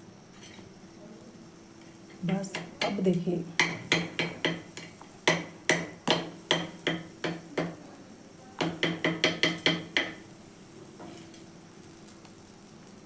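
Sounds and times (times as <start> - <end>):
metal utensil knocking on griddle: 2.5 - 7.8, 8.6 - 10.2.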